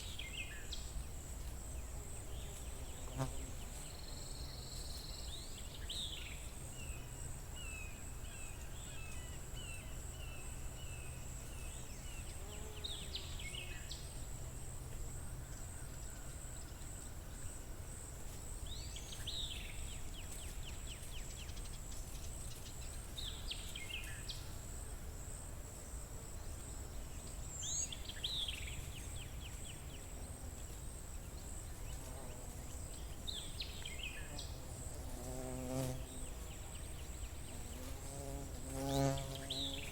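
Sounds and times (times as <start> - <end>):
songbird singing: 0.0 - 14.4, 18.6 - 24.7, 26.5 - 39.9.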